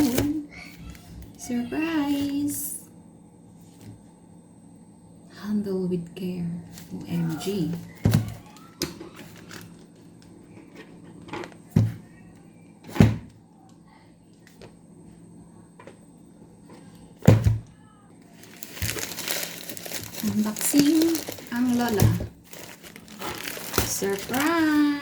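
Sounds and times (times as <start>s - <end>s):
packaging crinkling: 8.5s - 10.0s, 18.3s - 25.0s
cardboard parcel thumps: 18.4s - 24.9s.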